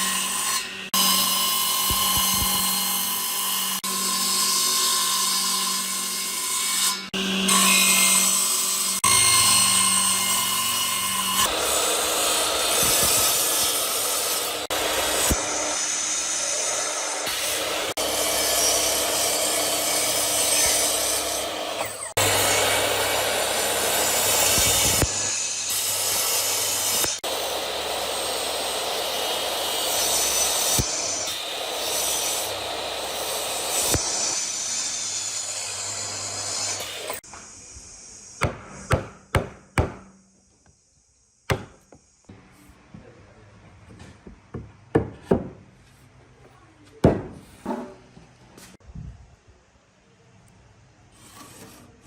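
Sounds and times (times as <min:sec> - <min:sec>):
power tool whirring on wood: 0:11.2 - 0:37.2.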